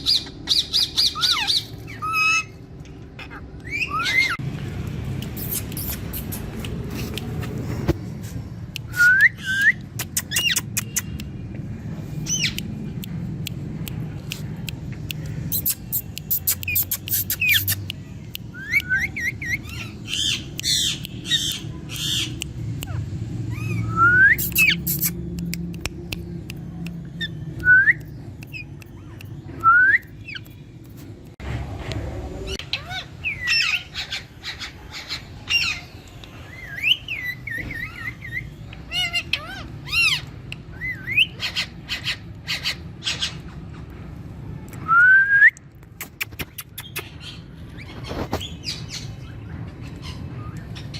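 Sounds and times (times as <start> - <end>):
parrots squawking and chirping: 0.0 - 4.6, 5.2 - 7.9, 9.4 - 11.2, 12.1 - 12.6, 15.2 - 25.2, 32.4 - 44.0, 46.0 - 50.9
sharp clicks: 4.5 - 8.0, 8.7 - 11.7, 12.4 - 19.0, 24.4 - 32.0.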